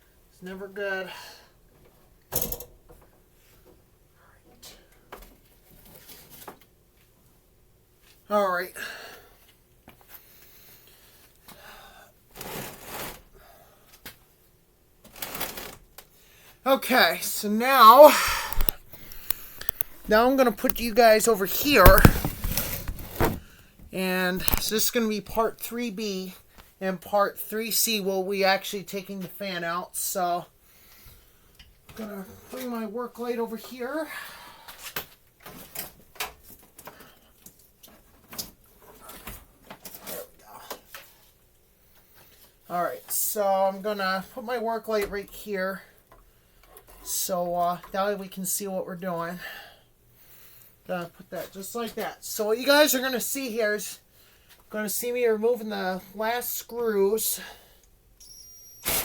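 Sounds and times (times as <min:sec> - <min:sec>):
person breathing out hard: 0:18.1 - 0:19.6.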